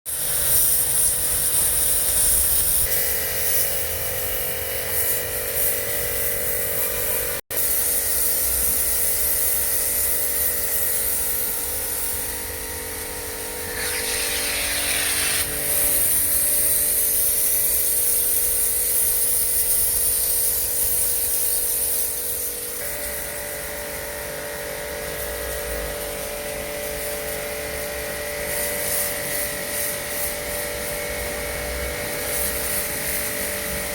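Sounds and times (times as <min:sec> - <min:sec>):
pressure washer motor hum: 0:04.9 - 0:19.0
high hiss of spray: 0:13.6 - 0:19.2.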